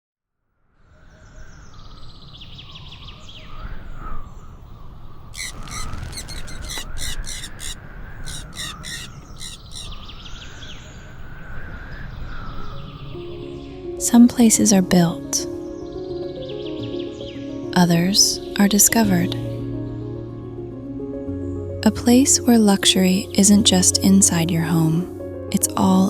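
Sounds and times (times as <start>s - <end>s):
harsh crow-like cawing: 5.4s - 10.0s
small birds chirping: 5.4s - 10.9s.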